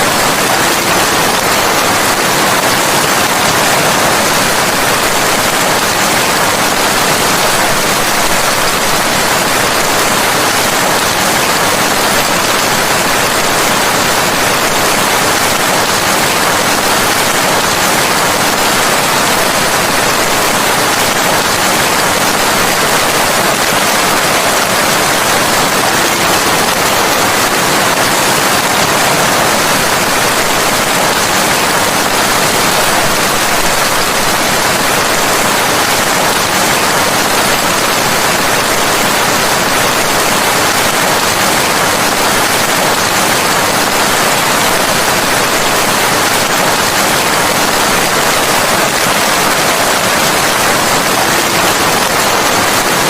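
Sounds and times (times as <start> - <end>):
steady rain hiss: 0.0 - 53.0.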